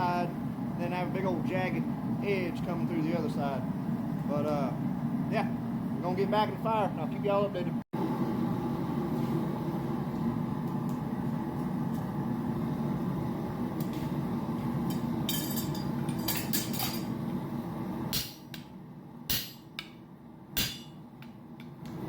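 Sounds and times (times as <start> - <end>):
hammer striking metal punch: 18.1 - 18.7, 19.3 - 20.0, 20.6 - 21.0.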